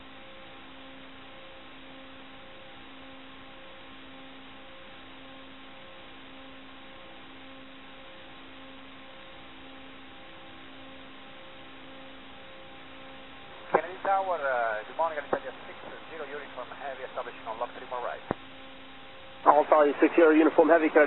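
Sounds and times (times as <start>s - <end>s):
pulsing low hum: 0.0s - 21.0s
radio open-channel hiss: 13.5s - 21.0s.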